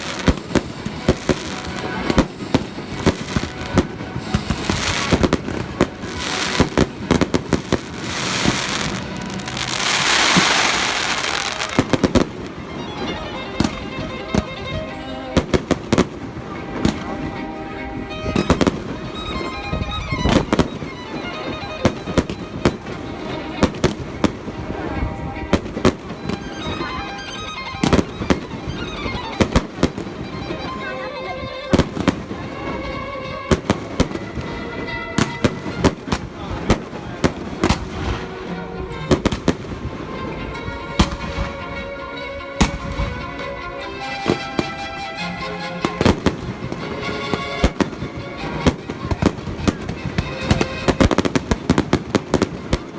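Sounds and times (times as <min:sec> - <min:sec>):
loud hissing firework shower: 0:00.0 - 0:12.2
show music: 0:00.0 - 0:52.9.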